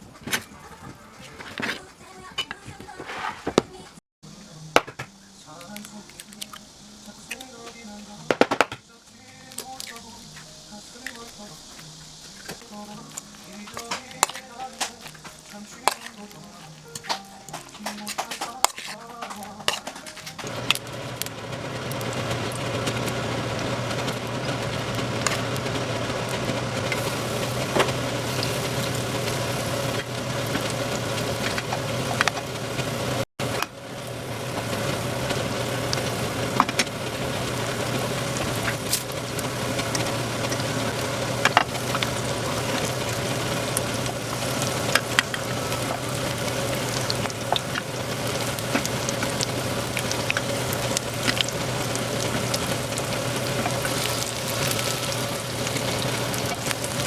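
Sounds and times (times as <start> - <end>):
oil popping and crackling: 4.8 - 57.0
pancake sizzling in oil: 5.5 - 57.0
low hum: 19.4 - 57.0.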